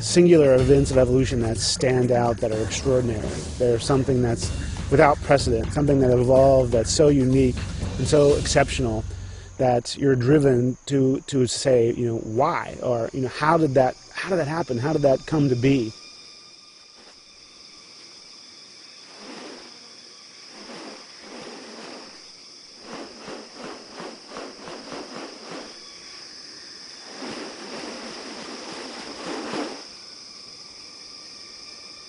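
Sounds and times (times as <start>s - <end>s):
insect chorus high buzz: 0.0s - 32.0s
rustling bursts: 19.0s - 26.1s, 27.0s - 30.0s.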